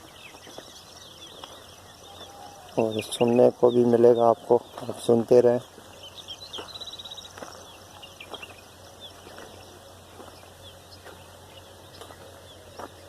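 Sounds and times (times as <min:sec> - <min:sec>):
faint footsteps: 0:00.0 - 0:13.0
small birds chirping: 0:00.0 - 0:13.0.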